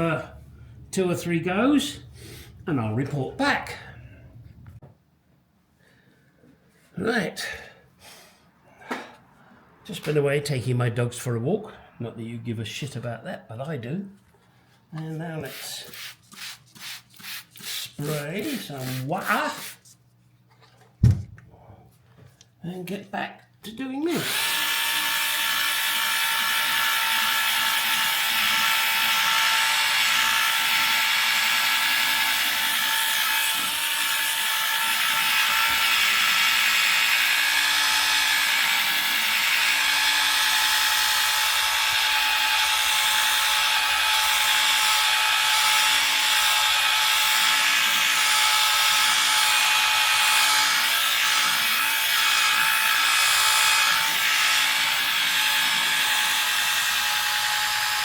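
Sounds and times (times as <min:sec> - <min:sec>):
power polisher whining: 0:24.1 - 0:58.0.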